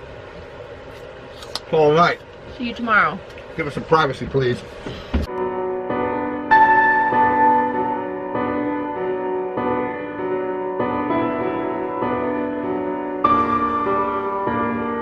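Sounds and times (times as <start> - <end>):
soft piano chords: 5.3 - 15.0.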